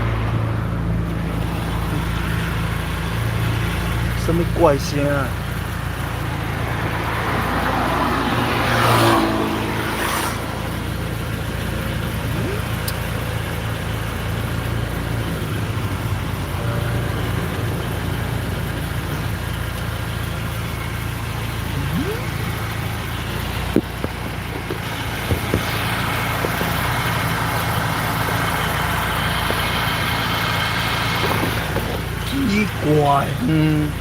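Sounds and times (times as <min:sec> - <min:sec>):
car engine running: 0:00.0 - 0:34.0
road noise: 0:00.0 - 0:34.0
chassis squeaks and clicks: 0:10.0 - 0:13.3, 0:20.5 - 0:32.4.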